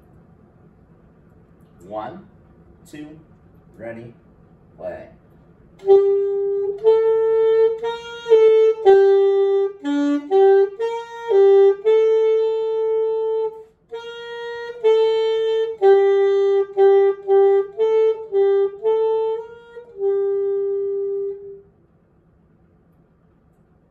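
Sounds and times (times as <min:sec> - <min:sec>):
wind instrument slow melody: 0:05.8 - 0:21.7.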